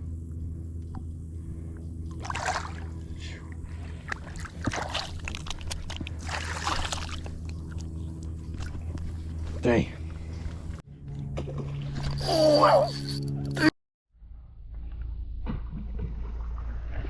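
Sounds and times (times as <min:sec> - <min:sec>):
steady low hum: 0:00.0 - 0:17.0
water splashing against boat: 0:02.1 - 0:10.8.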